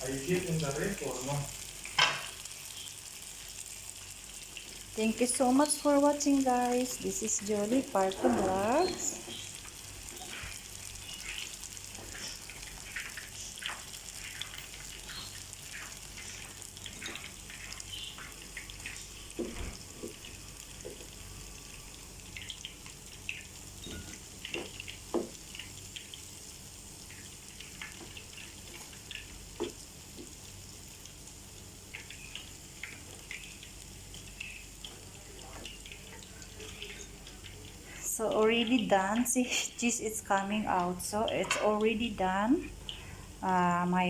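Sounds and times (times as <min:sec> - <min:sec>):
food frying with pops: 0:00.0 - 0:44.0.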